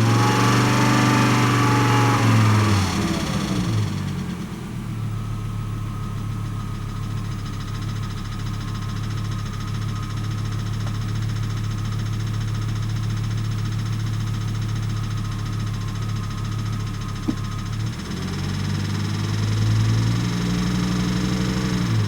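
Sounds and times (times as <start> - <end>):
car engine idling: 2.4 - 21.0
fast engine ticking: 6.0 - 22.0.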